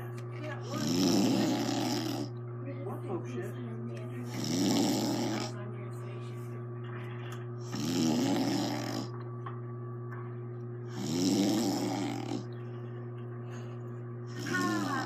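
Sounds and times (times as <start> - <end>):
steady low hum: 0.0 - 15.0
woman snoring: 0.7 - 2.3, 4.2 - 5.6, 7.6 - 9.1, 10.8 - 12.5, 14.2 - 15.0.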